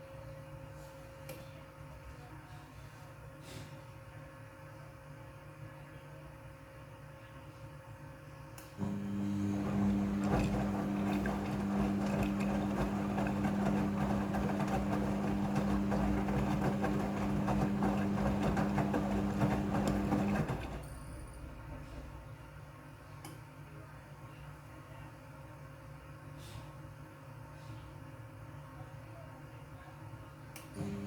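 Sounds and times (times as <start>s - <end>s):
washing machine motor hum: 8.8s - 22.4s, 30.8s - 31.0s
water churning: 9.4s - 20.8s.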